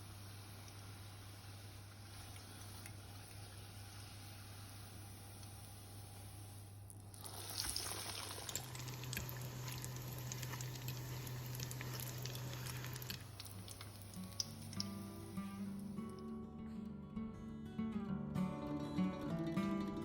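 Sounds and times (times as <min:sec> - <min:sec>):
low steady hum: 0:00.0 - 0:16.3
food sizzling in hot oil: 0:04.4 - 0:16.0.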